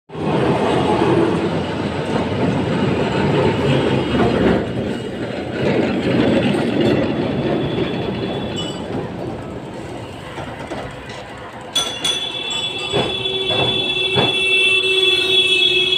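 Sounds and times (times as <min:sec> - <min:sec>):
tram wheels rumbling on rails: 0:00.1 - 0:15.9
high wheel squeal: 0:07.1 - 0:08.9.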